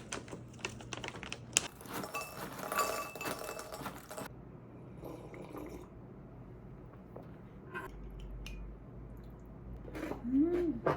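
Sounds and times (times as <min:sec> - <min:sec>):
glass clinking: 0:02.0 - 0:04.3.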